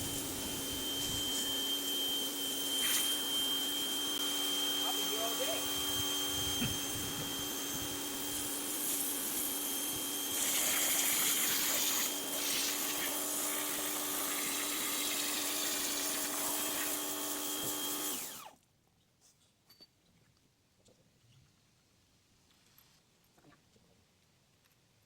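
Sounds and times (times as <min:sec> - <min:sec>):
pressure washer motor whine: 0:00.0 - 0:18.5
hiss of water spray: 0:10.4 - 0:13.2.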